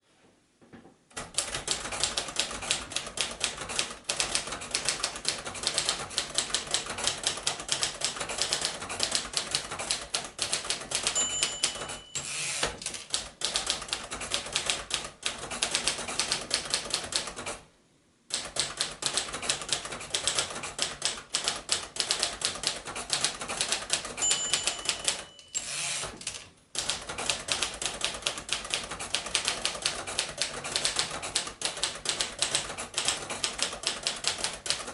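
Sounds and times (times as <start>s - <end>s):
typewriter carriage return: 1.1s - 17.5s, 18.4s - 34.9s
typewriter key strikes: 3.6s - 14.4s, 18.4s - 34.9s
typewriter margin bell ding: 11.0s - 12.6s, 24.1s - 26.1s.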